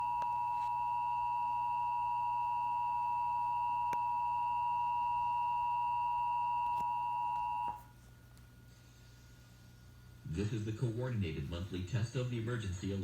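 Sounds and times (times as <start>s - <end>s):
harsh two-tone alarm tone: 0.0s - 7.8s.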